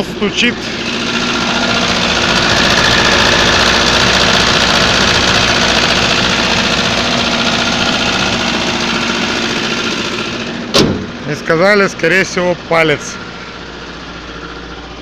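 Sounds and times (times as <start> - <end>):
car engine running with a knock: 0.0 - 11.3.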